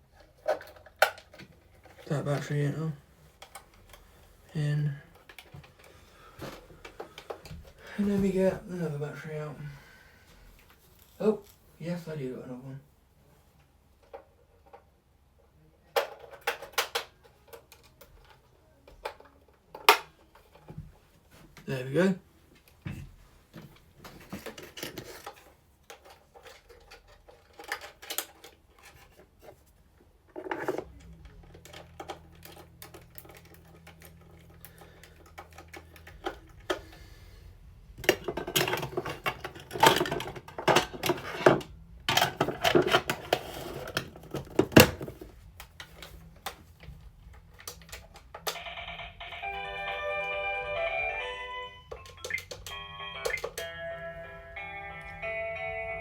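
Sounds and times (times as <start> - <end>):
plastic toy clicking and rattling: 0.1 - 2.6, 15.9 - 20.6, 24.4 - 29.6, 30.3 - 37.0, 38.0 - 46.7, 47.3 - 49.6, 51.9 - 53.7
electronic tune: 48.6 - 56.0.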